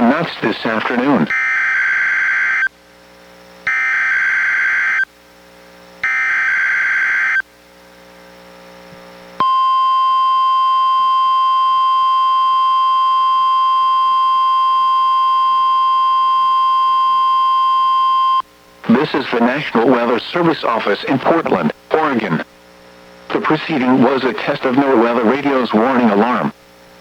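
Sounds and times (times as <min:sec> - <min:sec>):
steady warning alarm tone: 0:01.3 - 0:02.7, 0:03.7 - 0:05.1, 0:06.0 - 0:07.4, 0:09.4 - 0:20.2.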